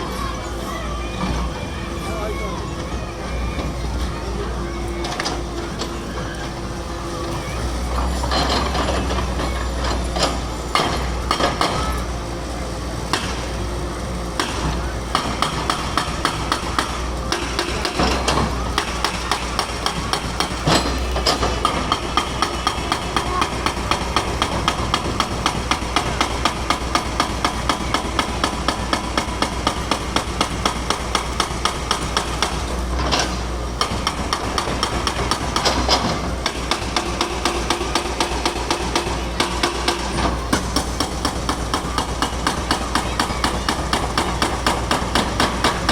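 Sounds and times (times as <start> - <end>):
engine drone: 0.0 - 45.9
hammer knocking: 8.2 - 12.0, 14.4 - 45.9.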